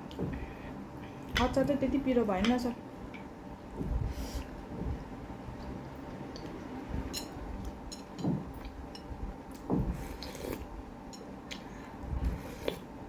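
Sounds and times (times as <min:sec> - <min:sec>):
person chewing: 0:09.5 - 0:10.8, 0:11.5 - 0:12.9.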